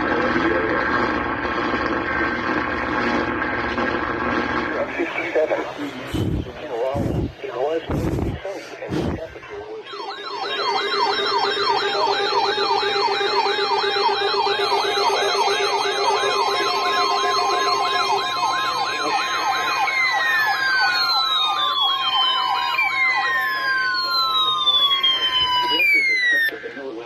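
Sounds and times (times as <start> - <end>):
steady high tone: 4.8 - 27.0
electronic yelp siren: 9.0 - 27.0.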